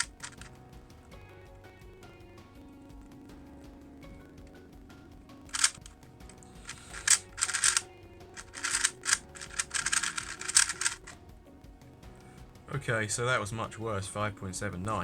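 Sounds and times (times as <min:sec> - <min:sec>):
puzzle cube clicking turns: 0:00.0 - 0:00.5, 0:05.5 - 0:07.8, 0:08.4 - 0:11.2.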